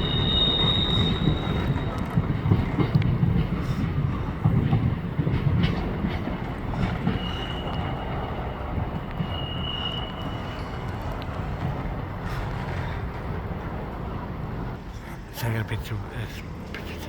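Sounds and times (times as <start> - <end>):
high wheel squeal: 0.0 - 2.4, 6.8 - 11.6
train wheels rumbling: 0.0 - 17.0.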